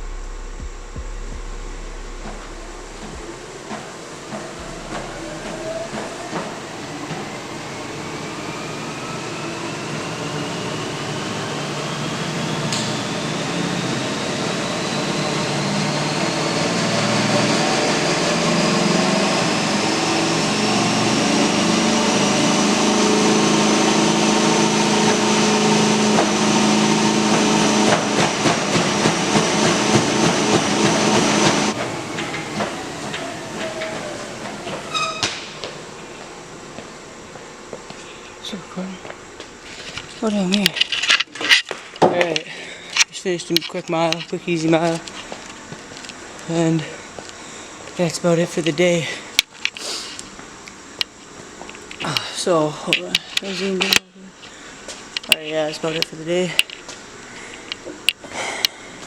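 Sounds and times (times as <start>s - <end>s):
treadmill motor whine: 0.0s - 43.3s.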